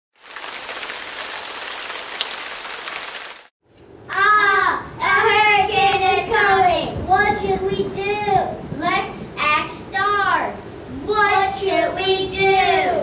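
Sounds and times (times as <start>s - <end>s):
heavy rain hissing: 0.2s - 3.5s
child's high drawn-out voice: 4.1s - 13.0s.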